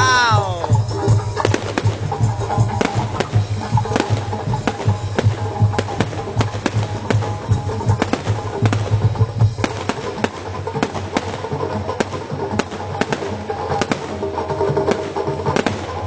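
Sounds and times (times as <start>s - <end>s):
fireworks cracking and banging: 0.0s - 16.0s
music with held tones: 0.0s - 16.0s.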